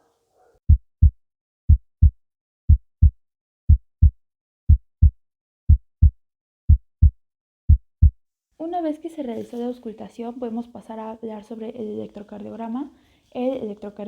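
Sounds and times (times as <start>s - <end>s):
heartbeat lub-dub: 0.7s - 8.2s.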